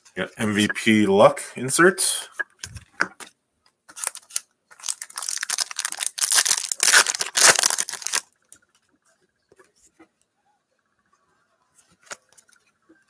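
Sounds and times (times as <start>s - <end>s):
foil wrapper tearing and crinkling: 3.9s - 8.3s.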